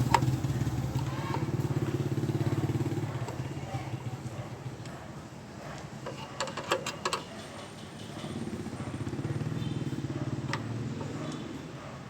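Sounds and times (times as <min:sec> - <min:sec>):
engine running with low pulse: 0:00.0 - 0:05.1.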